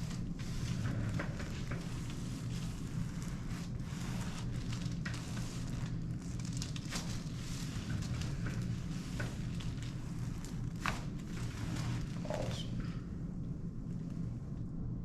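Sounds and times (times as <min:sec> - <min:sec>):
rustling and crackling: 0:00.0 - 0:13.1
steady low hum: 0:00.0 - 0:15.0.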